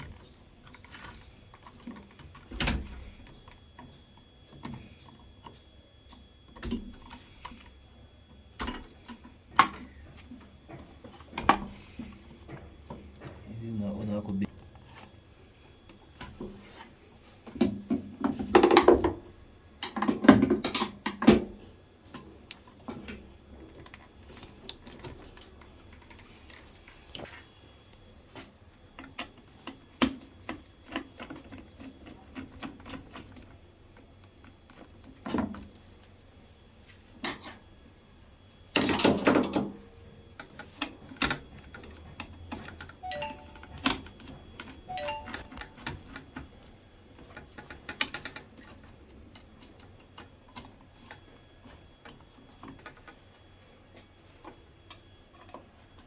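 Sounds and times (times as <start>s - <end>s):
faint short beeps: 43.0s - 44.0s, 44.9s - 45.9s.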